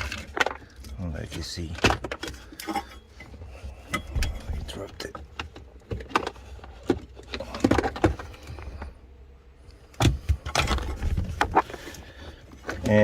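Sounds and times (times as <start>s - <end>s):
clatter of small parts and tools: 0.0s - 8.7s
low steady hum: 0.0s - 13.0s.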